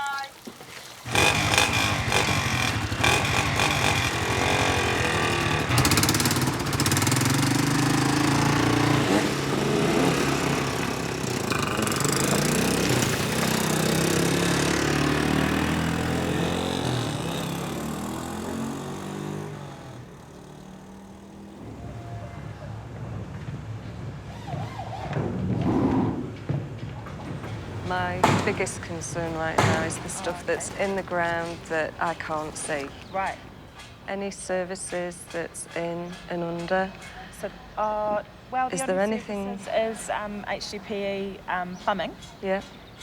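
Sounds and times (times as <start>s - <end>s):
motor engine running: 1.1s - 22.0s.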